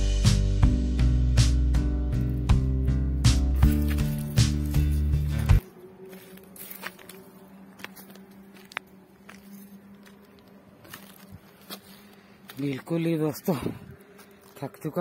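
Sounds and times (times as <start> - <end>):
background music: 0.0 - 8.4
footsteps crunching on trail: 3.4 - 15.0.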